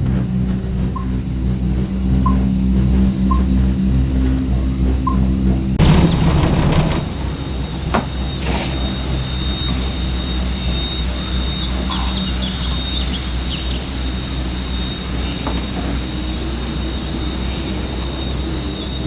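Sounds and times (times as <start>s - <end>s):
cable car humming: 0.0s - 19.0s
thin high whine: 0.0s - 19.0s
rattling clatter: 5.8s - 9.0s.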